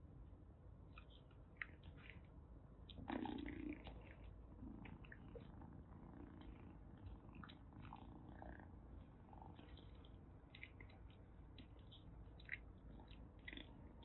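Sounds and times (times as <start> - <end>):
kitten purring: 2.9 - 14.0
faint clicks: 9.0 - 14.0.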